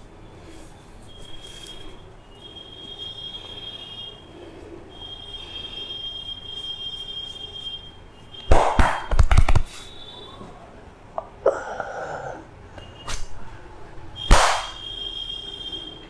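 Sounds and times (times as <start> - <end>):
thin high whine: 0.0 - 10.5, 12.4 - 16.0
sharp smacks: 8.5 - 9.7, 13.1 - 13.3, 14.3 - 14.8.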